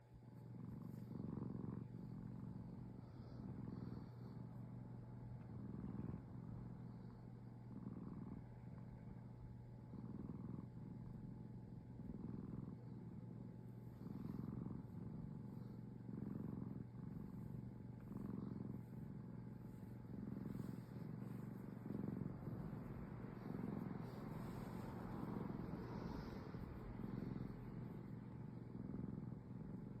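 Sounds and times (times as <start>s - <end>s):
cat purring: 0.0s - 30.0s.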